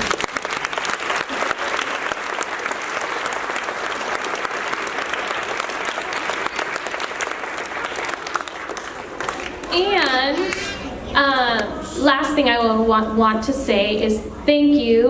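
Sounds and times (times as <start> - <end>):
audience applauding: 0.0 - 10.6.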